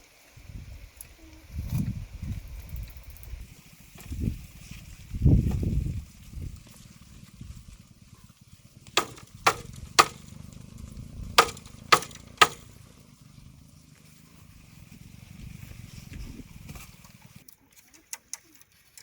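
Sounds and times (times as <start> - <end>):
low rumble: 4.1 - 17.0
sharp chopping knocks: 9.0 - 10.3, 11.4 - 12.7.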